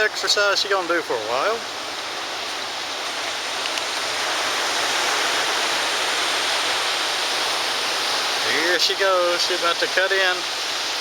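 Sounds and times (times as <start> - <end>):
ocean surf washing ashore: 0.0 - 11.0.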